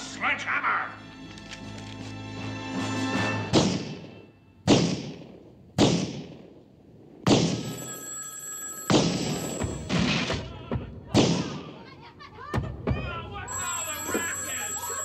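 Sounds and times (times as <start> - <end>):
telephone ringing: 7.6 - 9.9, 13.5 - 15.0.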